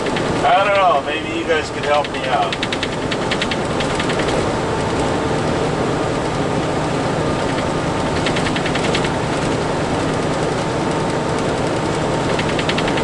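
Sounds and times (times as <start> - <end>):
fast rattle: 0.0 - 0.7, 1.8 - 5.1, 7.4 - 13.0
truck engine and road noise: 0.0 - 13.0.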